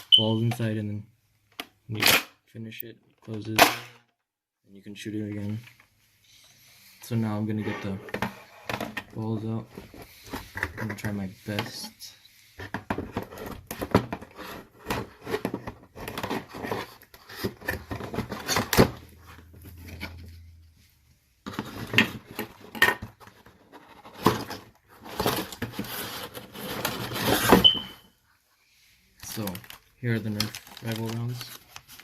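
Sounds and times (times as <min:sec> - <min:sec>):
packaging being torn and rustled: 0:29.2 - 0:32.0.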